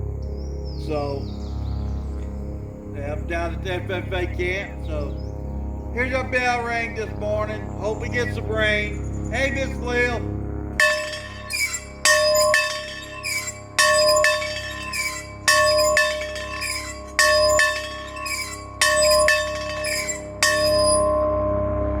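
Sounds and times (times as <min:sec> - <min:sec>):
hand bell ringing: 0:10.8 - 0:21.4.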